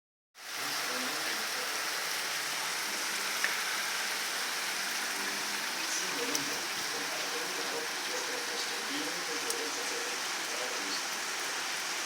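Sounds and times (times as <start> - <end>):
rain falling: 0.4 - 12.0.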